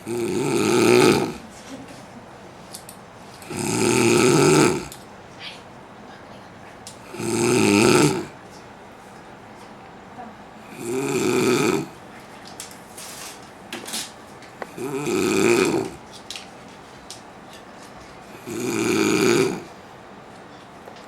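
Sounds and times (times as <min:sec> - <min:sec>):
man snoring heavily: 0:00.0 - 0:01.4, 0:03.4 - 0:05.0, 0:07.0 - 0:08.4, 0:10.6 - 0:12.0, 0:14.7 - 0:16.0, 0:18.3 - 0:19.7.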